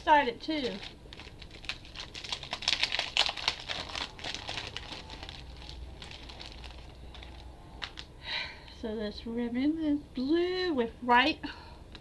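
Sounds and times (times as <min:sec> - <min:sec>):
packaging crinkling: 0:00.0 - 0:08.1.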